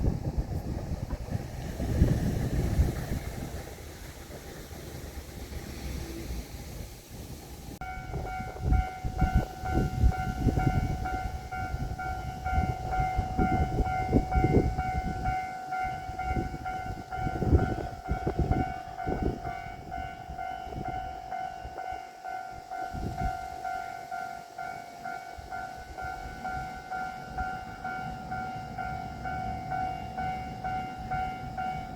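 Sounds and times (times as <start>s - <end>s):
level-crossing alarm ringing: 7.8s - 31.9s.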